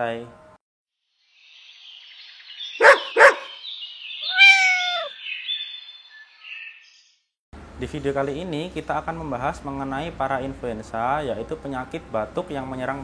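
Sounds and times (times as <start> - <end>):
dog barks: 2.8 - 3.6
cat meow: 4.2 - 5.1.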